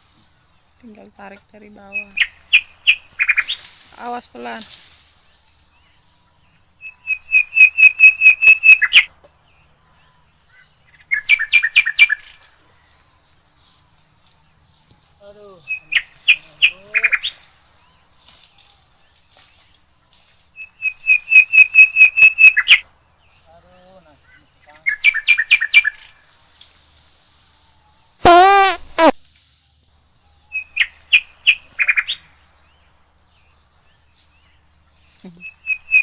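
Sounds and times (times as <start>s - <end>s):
bird calling rapid high notes: 28.2s - 29.2s.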